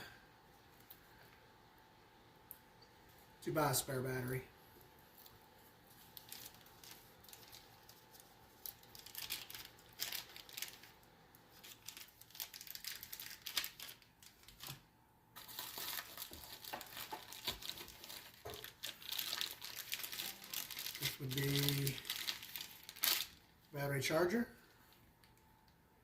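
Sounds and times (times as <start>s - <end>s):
packaging crinkling and rustling: 4.8s - 23.7s.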